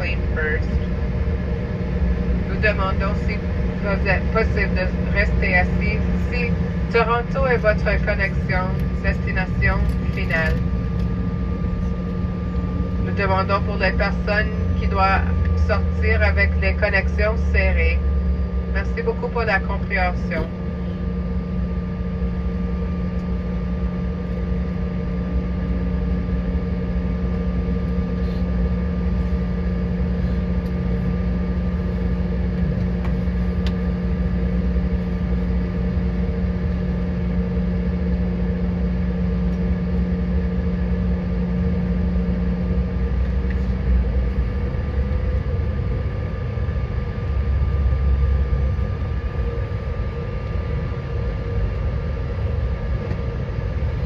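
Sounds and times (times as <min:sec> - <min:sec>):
airliner engines droning: 0:00.0 - 0:54.0
low rumble: 0:00.0 - 0:54.0.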